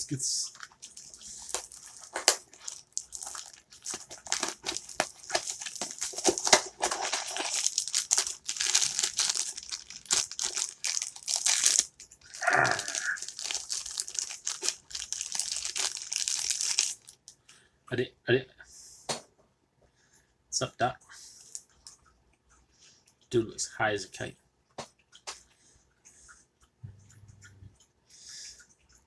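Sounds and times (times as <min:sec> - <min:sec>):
foil wrapper crinkling and tearing: 0:00.5 - 0:17.3.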